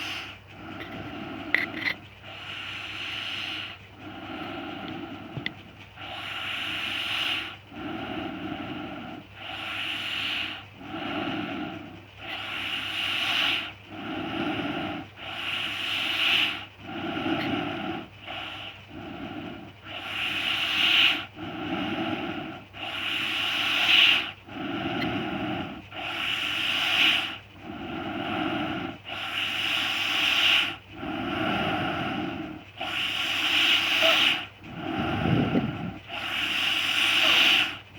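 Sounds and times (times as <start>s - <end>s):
person snoring: 15.8s - 37.8s.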